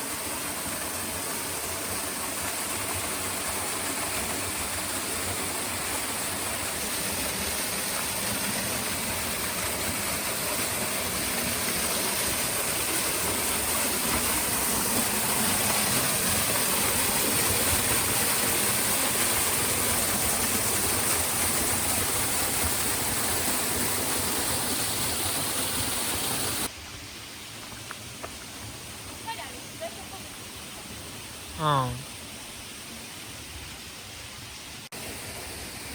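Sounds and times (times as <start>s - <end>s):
waterfall rushing: 0.0s - 26.7s.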